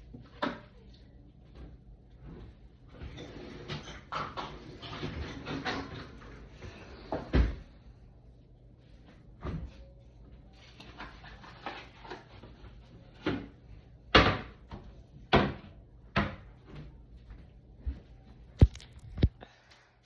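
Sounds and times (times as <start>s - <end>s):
knocks and clunks in a kitchen: 1.5s - 7.8s, 10.8s - 19.5s.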